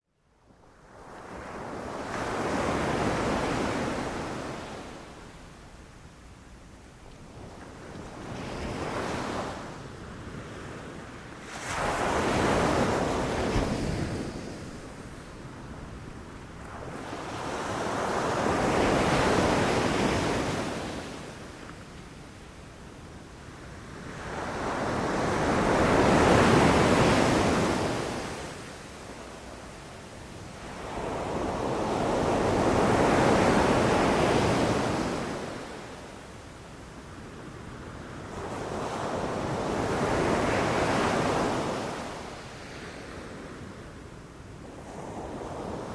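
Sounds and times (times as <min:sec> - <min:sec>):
ocean waves breaking on a beach: 0:00.7 - 0:45.9
wind on the microphone: 0:07.0 - 0:35.4.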